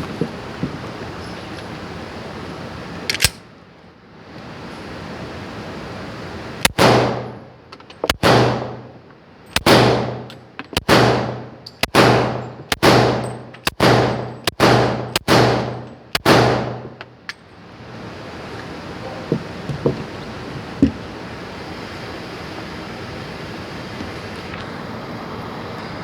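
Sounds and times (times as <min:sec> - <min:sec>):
pistol shots with ringing echo: 0:06.7 - 0:07.4, 0:08.1 - 0:08.9, 0:09.6 - 0:17.0.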